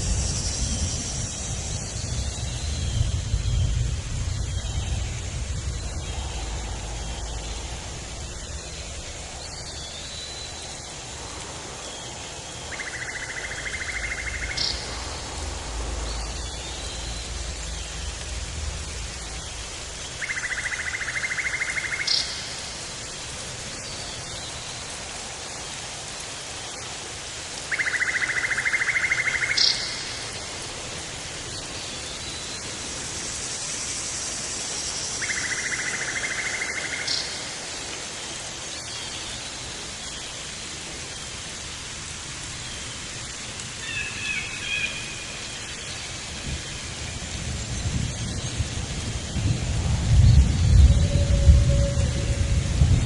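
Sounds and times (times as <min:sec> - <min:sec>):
low rumble: 0:00.0 - 0:11.5, 0:47.3 - 0:53.0
steady hiss: 0:00.0 - 0:53.0.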